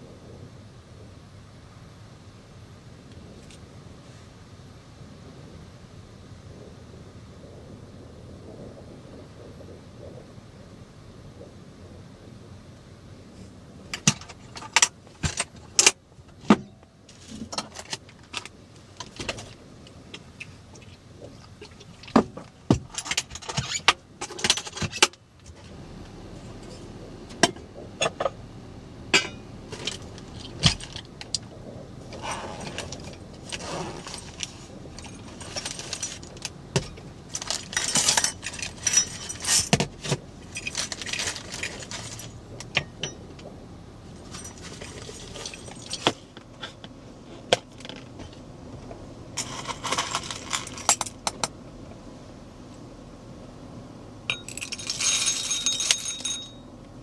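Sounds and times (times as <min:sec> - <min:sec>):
low rumble: 0:00.0 - 0:14.7, 0:25.3 - 0:55.2
metal and glass objects clinking: 0:37.3 - 0:39.8, 0:40.5 - 0:43.2, 0:44.2 - 0:46.2, 0:54.3 - 0:56.7.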